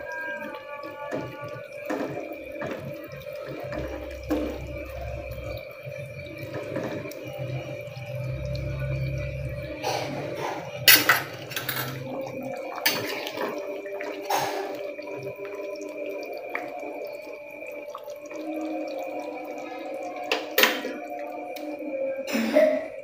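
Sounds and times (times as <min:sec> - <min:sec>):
water sounds: 0:00.0 - 0:23.0
clinking kitchen utensils and dishes: 0:09.9 - 0:14.8, 0:20.3 - 0:21.0.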